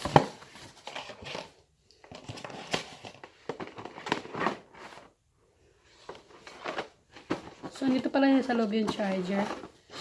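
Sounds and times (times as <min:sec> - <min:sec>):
box rustling: 0:00.0 - 0:05.2, 0:05.9 - 0:10.0.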